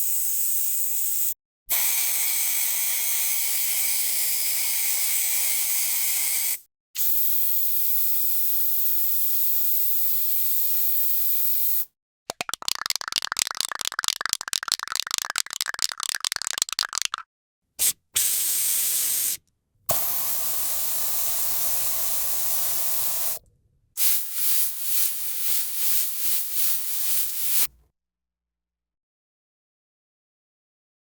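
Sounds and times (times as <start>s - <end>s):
spray hissing: 17.8s - 23.4s, 24.0s - 27.7s.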